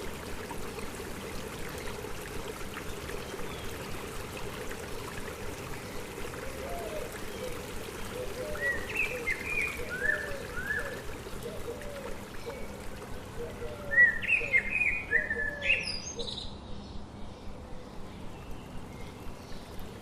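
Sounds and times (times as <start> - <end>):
stream running: 0.0 - 20.0
bird chirps: 13.4 - 17.1.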